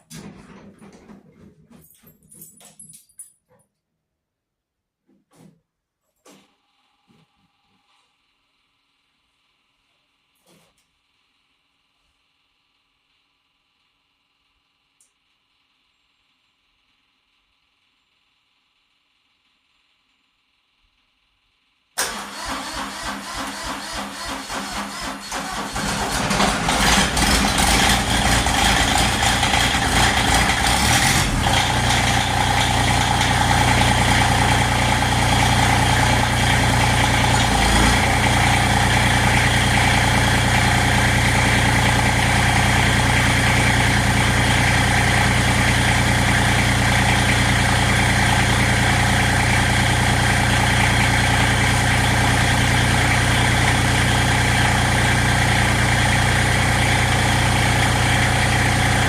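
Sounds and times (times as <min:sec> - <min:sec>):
tractor engine idling: 0:22.0 - 0:59.0.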